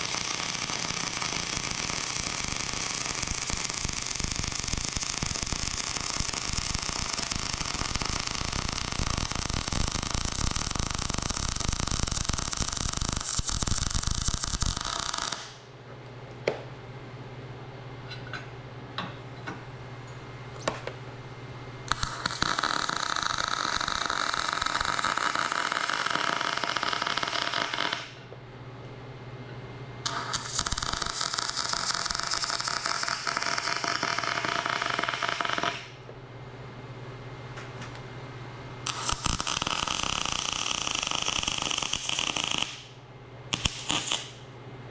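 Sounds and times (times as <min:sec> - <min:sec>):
arc welding crackle: 0:00.0 - 0:15.7, 0:21.9 - 0:28.3, 0:30.0 - 0:36.0, 0:38.8 - 0:44.5.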